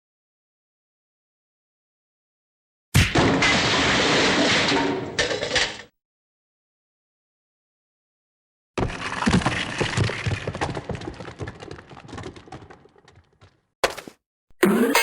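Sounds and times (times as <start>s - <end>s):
hard objects falling and clattering: 3.1s - 5.9s, 8.8s - 14.0s.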